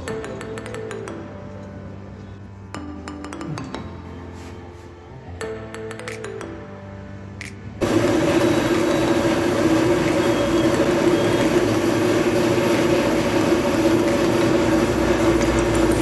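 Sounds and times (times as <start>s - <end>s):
loud mechanical noise with hum: 7.4s - 16.0s.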